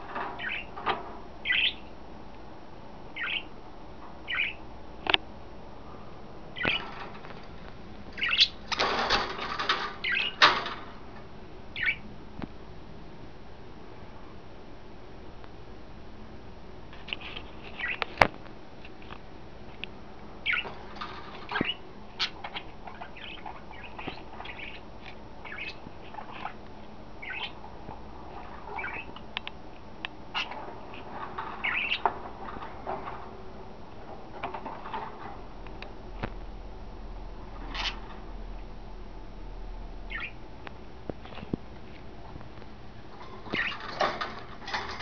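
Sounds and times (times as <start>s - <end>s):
budgies chirping: 0.4s - 0.8s, 1.4s - 1.9s, 3.2s - 3.5s, 4.2s - 4.6s, 6.6s - 7.5s, 8.2s - 10.7s, 11.7s - 12.1s, 17.7s - 18.2s, 20.4s - 27.6s, 28.2s - 29.2s, 30.3s - 33.1s, 37.6s - 38.2s, 40.1s - 40.4s, 43.2s - 45.0s.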